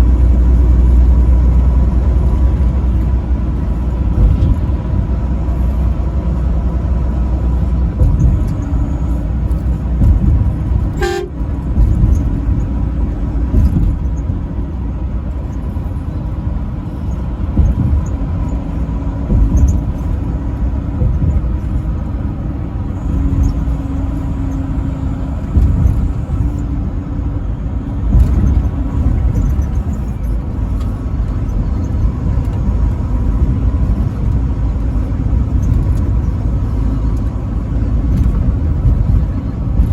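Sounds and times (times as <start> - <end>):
truck engine rumble: 0.0 - 39.9
truck horn toot: 11.0 - 11.4.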